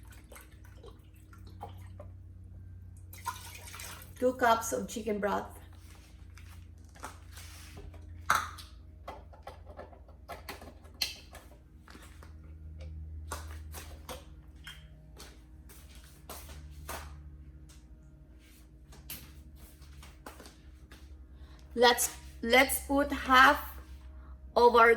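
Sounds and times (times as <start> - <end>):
low steady hum: 0.0 - 24.9.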